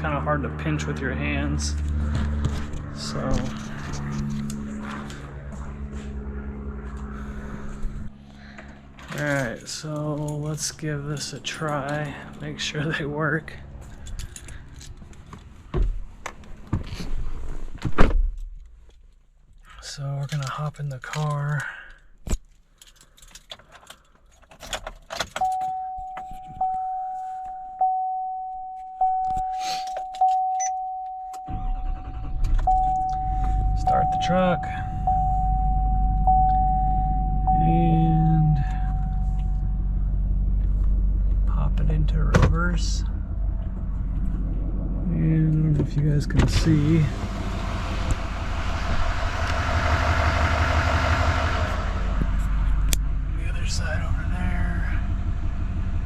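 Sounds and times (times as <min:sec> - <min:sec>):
diesel engine starting and rumbling: 0:00.0 - 0:18.8, 0:29.0 - 0:56.0
keys jangling: 0:13.9 - 0:15.0
vehicle warning chime: 0:25.4 - 0:40.4.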